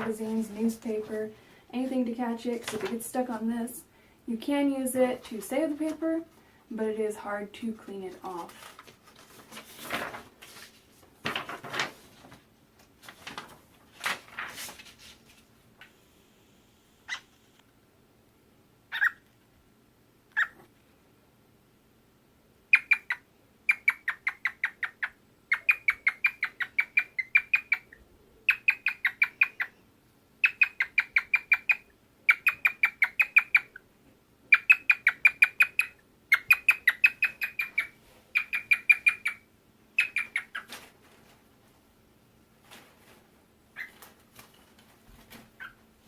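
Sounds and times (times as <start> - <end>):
cockatiel chirping: 18.9 - 19.2, 20.4 - 20.7, 22.7 - 29.8, 30.4 - 33.8, 34.5 - 39.4, 40.0 - 40.7, 43.8 - 44.0.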